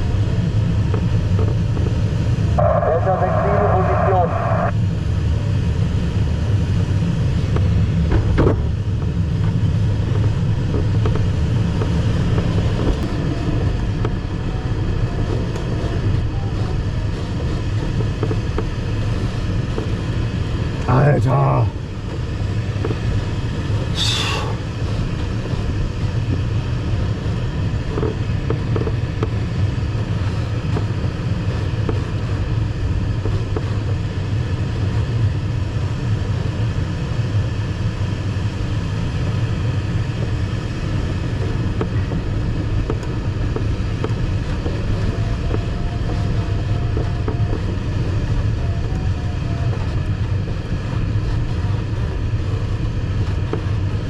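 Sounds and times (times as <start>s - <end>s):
airflow rushing around cockpit: 0.0s - 54.0s.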